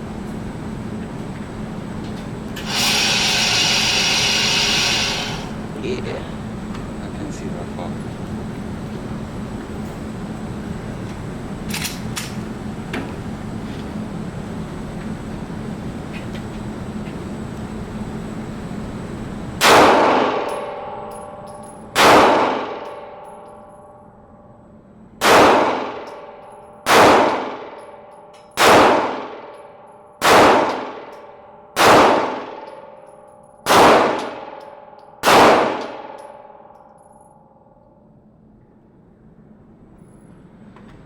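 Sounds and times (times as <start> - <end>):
gunshots ringing steel target: 19.6 - 24.0, 25.2 - 33.0, 33.6 - 37.2.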